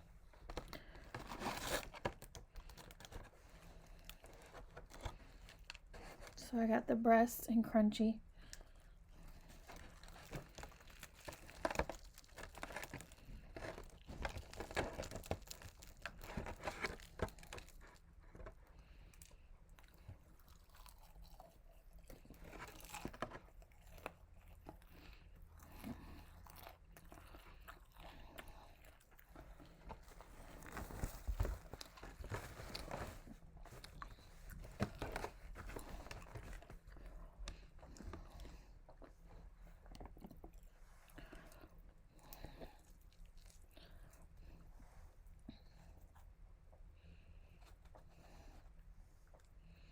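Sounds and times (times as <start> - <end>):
person chewing crispy chicken: 8.4 - 31.2.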